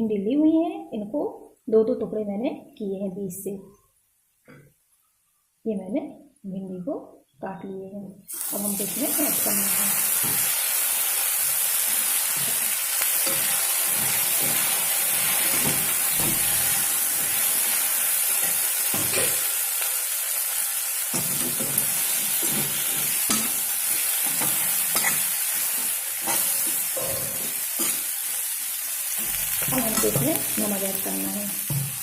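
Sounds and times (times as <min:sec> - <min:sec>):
vegetables sizzling in oil: 0:08.3 - 0:32.0
spoon scraping pan: 0:21.2 - 0:28.1.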